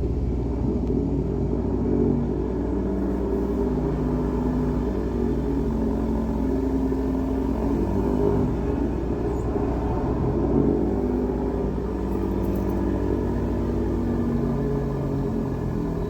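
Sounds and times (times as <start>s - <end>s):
hydro jetter engine drone: 0.0s - 16.0s.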